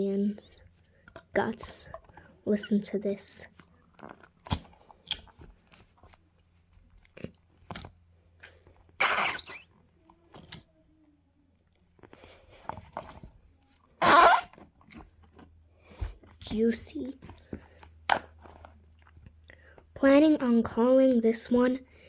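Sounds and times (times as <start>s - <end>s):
wet slime squelches: 0.0s - 22.0s
slime squished by hand: 3.5s - 10.7s.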